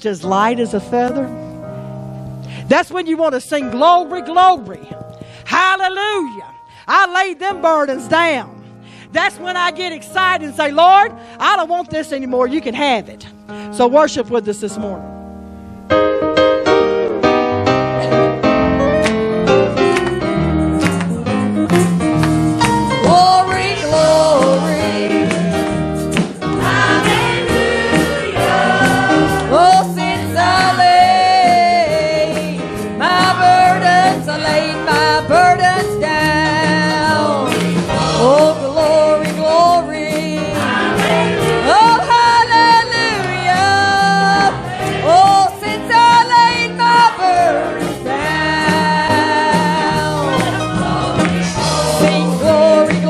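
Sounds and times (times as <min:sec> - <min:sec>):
gospel worship song: 0:00.0 - 0:15.1, 0:15.7 - 0:53.0.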